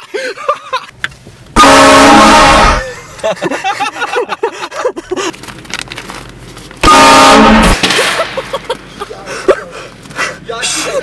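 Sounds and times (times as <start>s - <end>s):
train horn blast: 1.6s - 2.9s, 6.8s - 7.8s.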